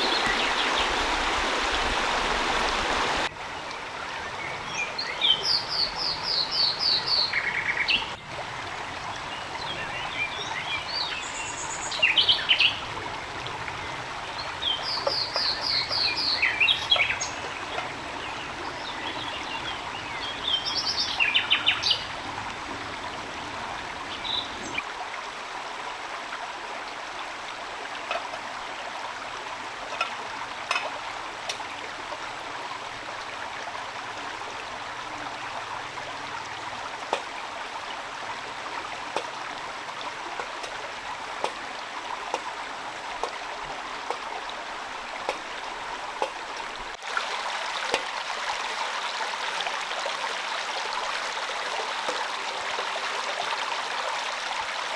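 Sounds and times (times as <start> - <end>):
rain falling: 0.0 - 3.3, 24.8 - 54.9.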